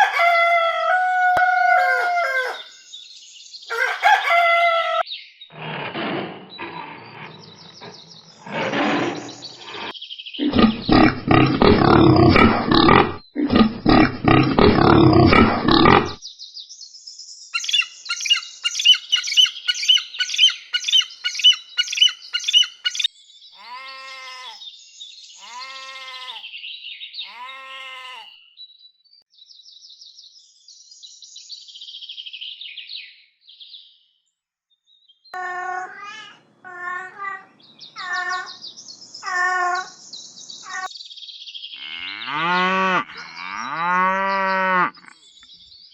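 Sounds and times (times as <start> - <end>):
rough grunting animal calls: 5.5 - 16.2
high animal chirps: 25.4 - 26.5, 35.4 - 38.6, 39.2 - 40.9.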